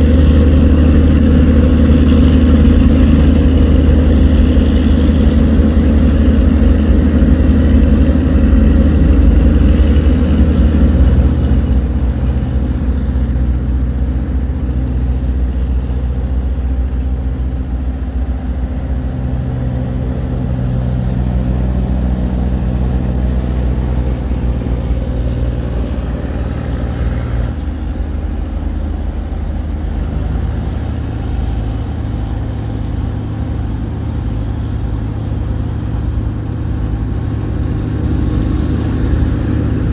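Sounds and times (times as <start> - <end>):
diesel engine droning: 0.0 - 39.9.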